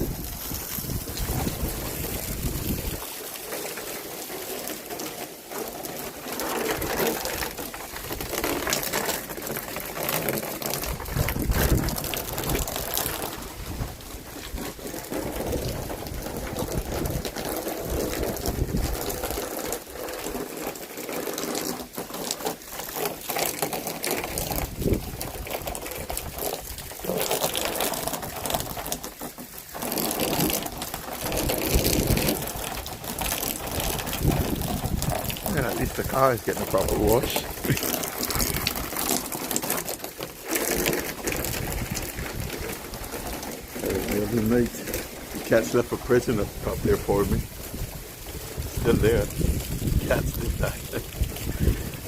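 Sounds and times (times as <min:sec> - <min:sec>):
heavy rain falling: 0:00.0 - 0:52.0
low rumble of gusts: 0:10.9 - 0:12.8, 0:43.9 - 0:52.0.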